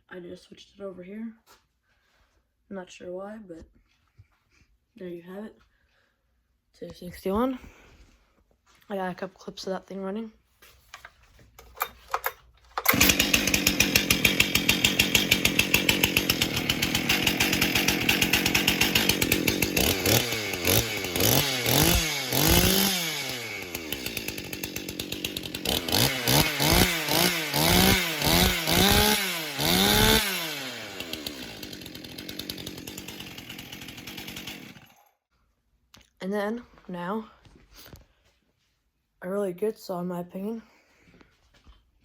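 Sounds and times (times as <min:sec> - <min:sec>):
chainsaw revving: 0:12.8 - 0:35.1.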